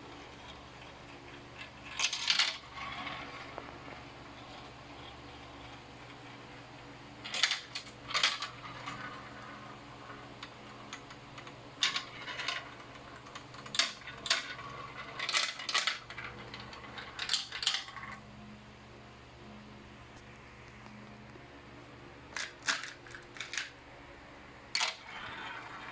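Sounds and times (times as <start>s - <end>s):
marbles clicking on track: 0.1s - 6.3s, 7.3s - 18.2s, 22.4s - 23.7s, 24.8s - 25.9s.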